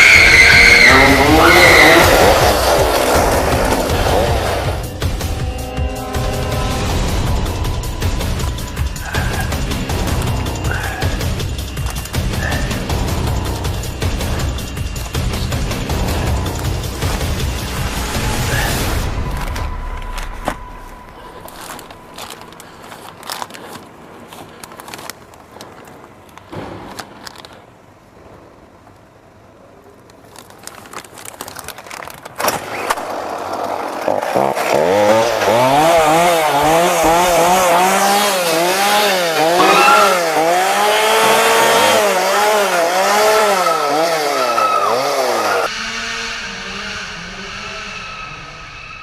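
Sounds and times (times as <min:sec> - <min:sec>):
chainsaw engine revving: 0:00.0 - 0:12.9, 0:34.0 - 0:47.1.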